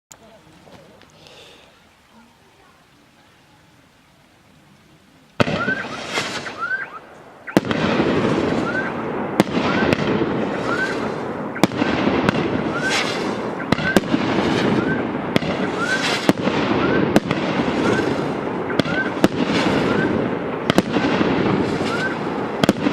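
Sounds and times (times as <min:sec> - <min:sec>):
fireworks hiss: 0:00.6 - 0:22.9
fireworks bangs: 0:05.4 - 0:22.9
rising firework whistle: 0:05.4 - 0:22.9.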